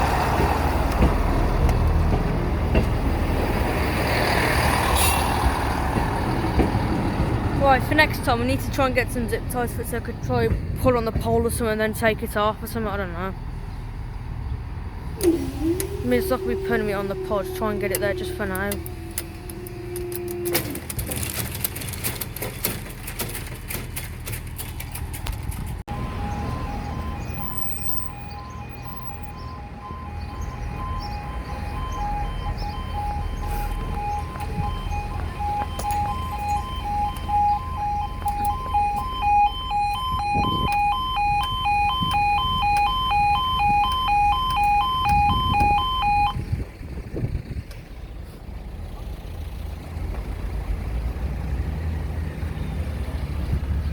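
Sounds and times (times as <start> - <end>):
low rumbles: 0.0 - 53.9
level crossing two-tone alarm: 25.9 - 46.4.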